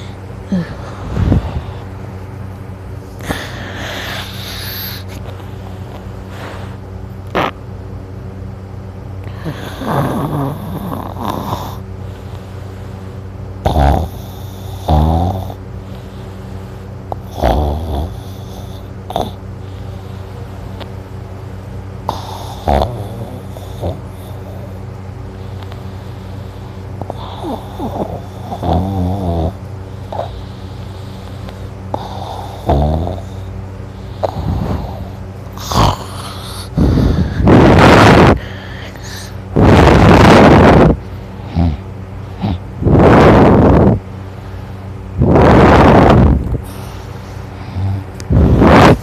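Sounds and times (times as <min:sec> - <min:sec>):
person snoring: 0:00.0 - 0:01.9, 0:03.1 - 0:06.8, 0:09.2 - 0:11.8, 0:13.6 - 0:15.6, 0:17.1 - 0:19.4, 0:22.1 - 0:24.7, 0:27.0 - 0:44.0, 0:45.2 - 0:49.0
steady low hum: 0:00.0 - 0:49.0.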